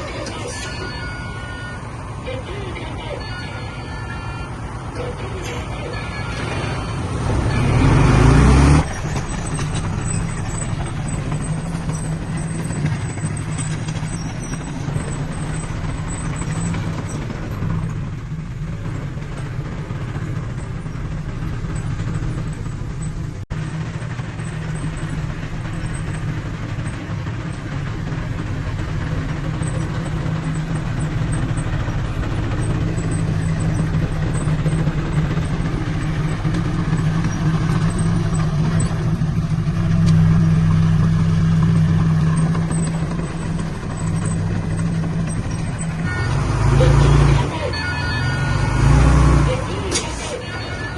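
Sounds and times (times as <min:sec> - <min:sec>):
heavy machine diesel engine running: 0:00.0 - 0:50.9
loud engine burst: 0:06.2 - 0:17.9, 0:23.6 - 0:50.9.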